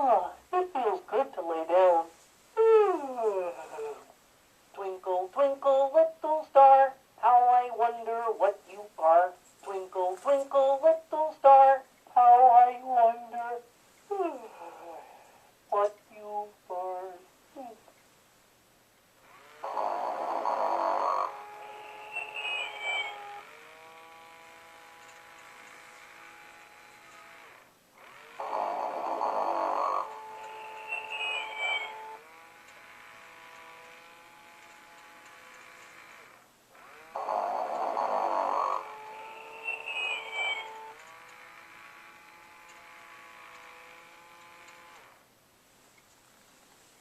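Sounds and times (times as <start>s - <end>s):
steady multi-tone hum: 0.0s - 46.1s
toy playing recorded snore: 2.6s - 4.1s, 12.1s - 15.9s, 19.2s - 45.3s
long steady tone: 21.9s - 23.4s, 30.3s - 32.2s, 39.3s - 41.0s
whistling note gliding: 39.4s - 40.8s.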